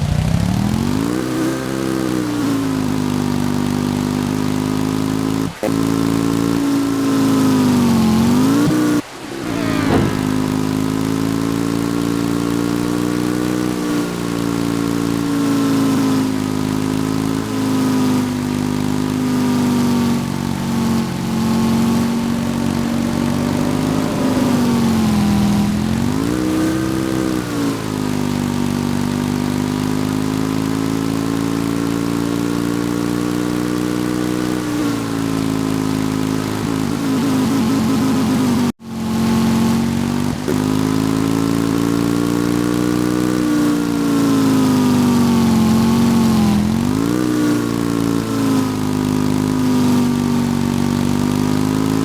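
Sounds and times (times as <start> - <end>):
motorcycle engine running: 0.0 - 52.0.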